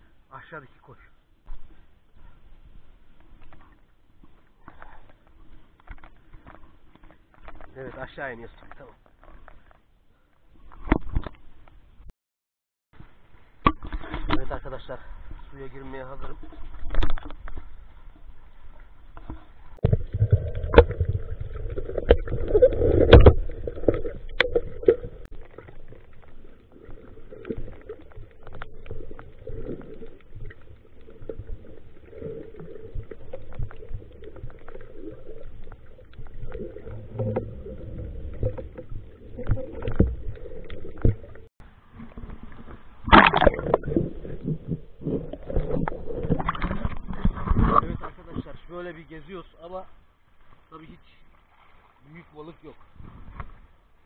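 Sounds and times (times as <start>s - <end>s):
water sloshing and gurgling: 1.4s - 12.0s, 13.0s - 54.0s
water splashing: 13.6s - 49.5s.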